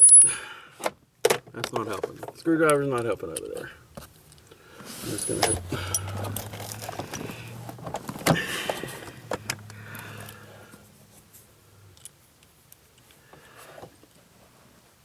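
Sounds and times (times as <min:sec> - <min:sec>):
low steady hum: 0:01.3 - 0:15.0
metal clicks and scrapes of tools: 0:02.6 - 0:07.3.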